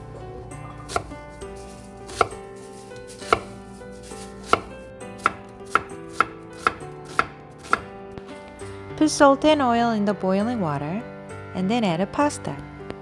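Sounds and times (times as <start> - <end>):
knife chopping onion: 0.8 - 7.9.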